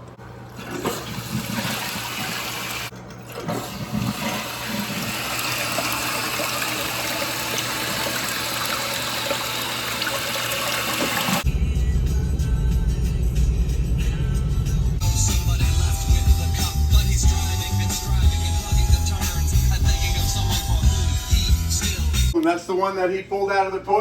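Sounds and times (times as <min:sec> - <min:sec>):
toilet flushing: 0:00.2 - 0:11.5.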